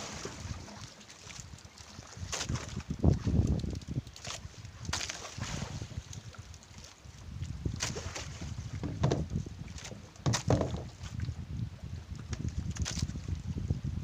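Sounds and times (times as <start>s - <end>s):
water splashes: 0.0s - 11.4s
water slapping boat hull: 0.0s - 14.0s
wind buffeting microphone: 2.1s - 6.3s, 7.0s - 14.0s.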